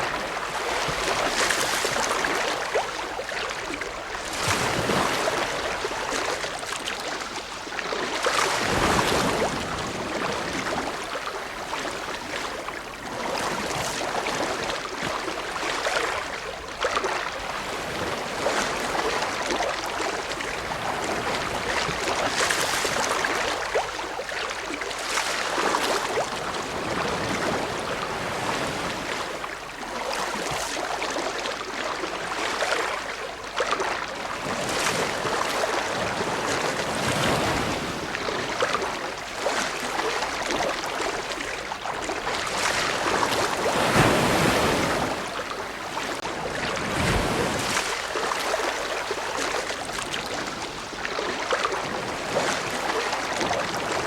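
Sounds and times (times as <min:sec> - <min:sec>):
ocean waves breaking: 0:00.0 - 0:07.4, 0:34.3 - 0:54.0.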